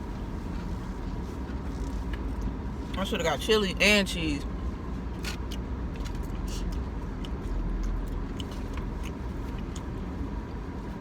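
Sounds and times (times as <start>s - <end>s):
low rumble inside a car: 0.0s - 11.0s
person chewing: 5.5s - 10.1s.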